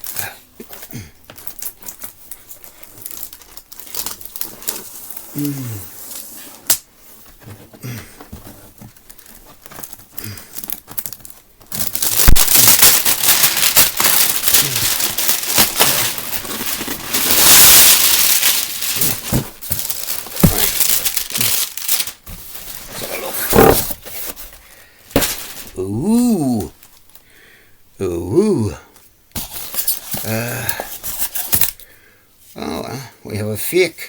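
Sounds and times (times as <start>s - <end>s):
packaging crinkling and rustling: 0.0s - 7.6s, 8.3s - 25.8s, 26.7s - 27.2s
packaging tearing: 1.4s - 6.8s, 9.1s - 24.4s.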